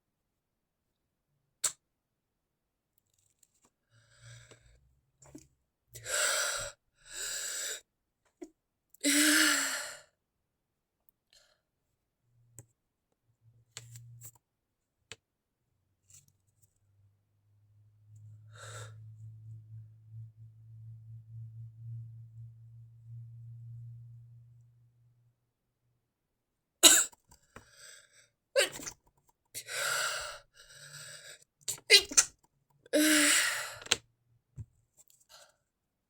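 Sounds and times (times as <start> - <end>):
person sneezing: 26.8 - 27.2, 28.6 - 28.9, 31.7 - 32.3.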